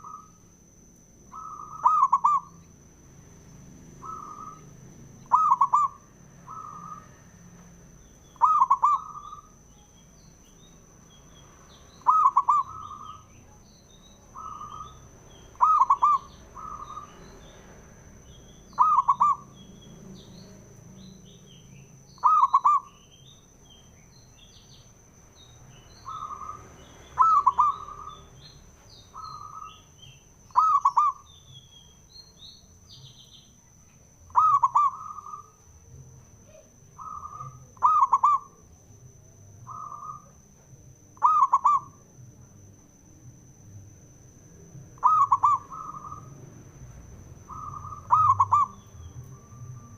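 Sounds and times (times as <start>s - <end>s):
small birds chirping: 0.0s - 49.9s
dove cooing: 1.3s - 2.6s, 4.0s - 7.2s, 8.3s - 9.6s, 12.0s - 13.3s, 14.3s - 17.5s, 18.7s - 19.7s, 22.2s - 22.9s, 26.0s - 28.5s, 29.1s - 31.3s, 34.3s - 35.6s, 36.4s - 38.7s, 39.6s - 40.4s, 41.2s - 42.0s, 44.9s - 46.3s, 47.5s - 49.9s.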